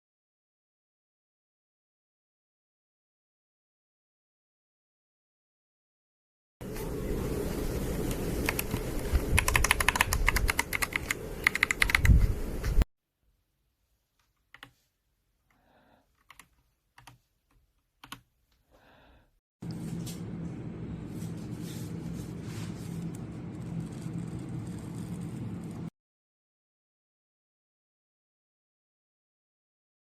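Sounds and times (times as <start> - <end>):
mechanical keyboard typing: 8.4 - 12.3, 16.2 - 17.2, 18.0 - 18.2.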